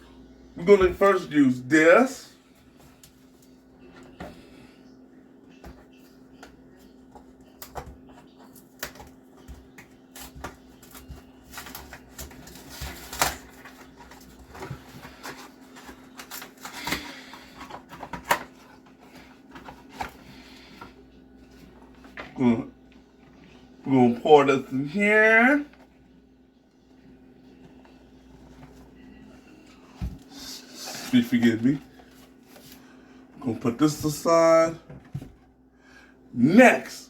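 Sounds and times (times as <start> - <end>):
steady low hum: 0.0 - 37.0
packaging clicks and rustles: 7.6 - 21.0.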